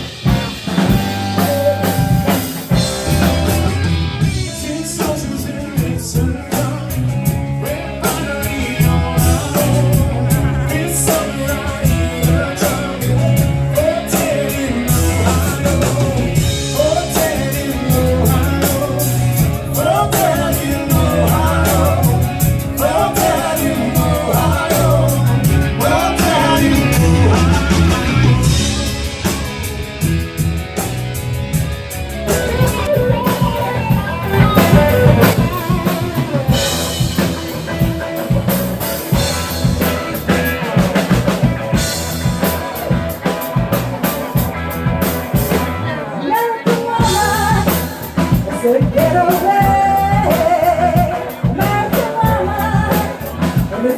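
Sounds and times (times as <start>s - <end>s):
live rock band playing: 0.0s - 53.9s
wavering lead melody: 7.3s - 46.1s.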